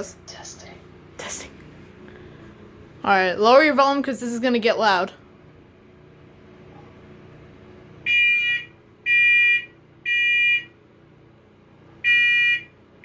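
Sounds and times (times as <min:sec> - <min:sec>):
smoke alarm beeping: 0:08.1 - 0:10.7, 0:12.0 - 0:12.7.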